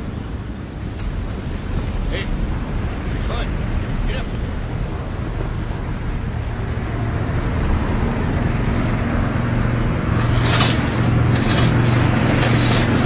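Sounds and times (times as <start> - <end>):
engine humming: 0.0 - 13.0
short hissing: 1.4 - 2.1.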